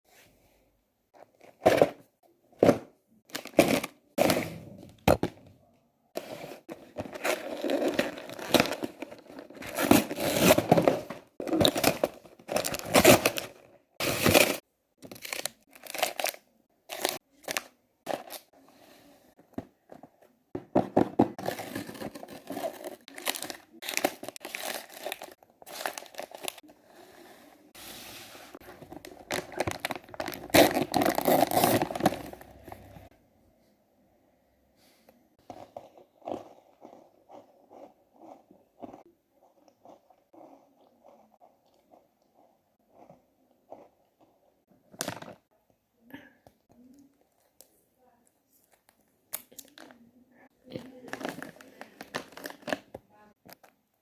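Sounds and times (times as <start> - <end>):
plastic packaging crinkling: 21.4 - 26.6, 28.6 - 32.9, 50.7 - 52.9.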